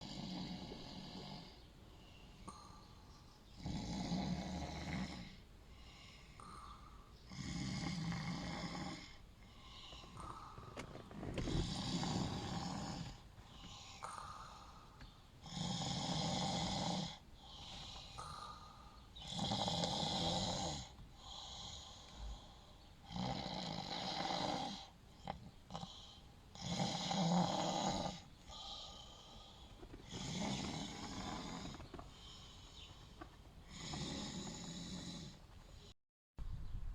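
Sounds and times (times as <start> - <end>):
man snoring: 0.0 - 1.6, 3.6 - 14.8, 15.4 - 29.4, 30.0 - 31.8, 33.7 - 35.4
soft breathing: 0.7 - 3.6, 4.8 - 7.3, 8.6 - 15.4, 17.2 - 19.3, 20.8 - 23.0, 28.2 - 35.9.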